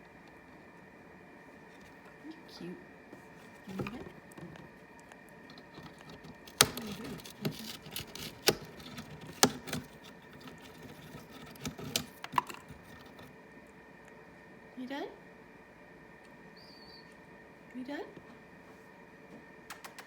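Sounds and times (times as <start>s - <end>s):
parrot beak chewing and crunching: 3.4s - 13.3s.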